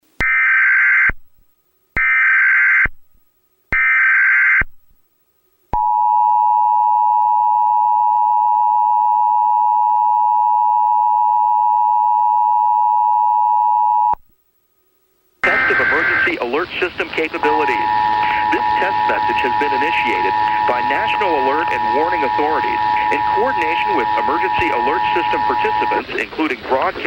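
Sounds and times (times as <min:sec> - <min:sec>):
two-tone attention signal: 0:15.4 - 0:26.2
digital data tone bursts: 0:15.4 - 0:27.0.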